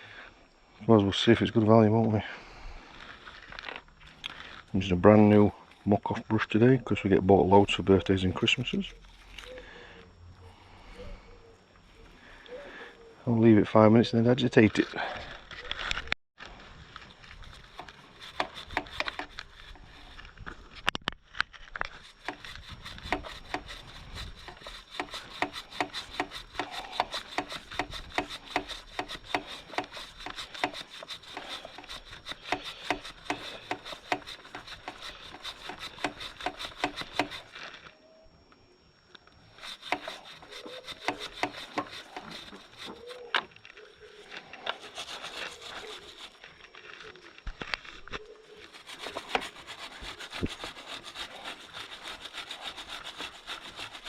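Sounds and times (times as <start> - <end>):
brush scrubbing a chain: 17.2 - 20.4, 21.9 - 37.7, 39.5 - 47.0, 48.4 - 54.0.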